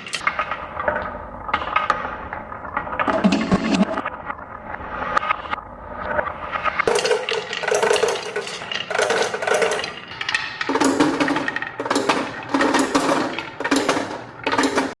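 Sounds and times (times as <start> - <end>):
marbles clattering down wooden track: 6.8 - 15.0
marbles rolling hum: 6.8 - 15.0.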